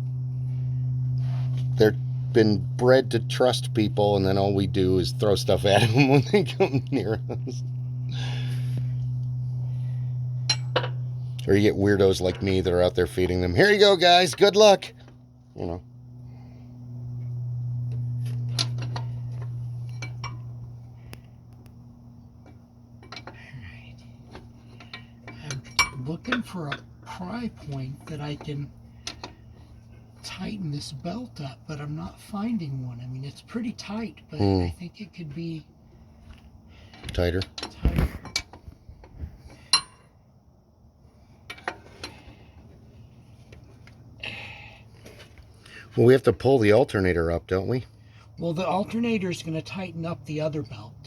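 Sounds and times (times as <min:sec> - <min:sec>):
steady low hum: 0:00.0 - 0:51.0
metal tools clinking on engine parts: 0:10.4 - 0:11.5, 0:18.2 - 0:20.7, 0:22.4 - 0:30.6, 0:36.9 - 0:38.6, 0:39.5 - 0:40.1, 0:41.4 - 0:42.4.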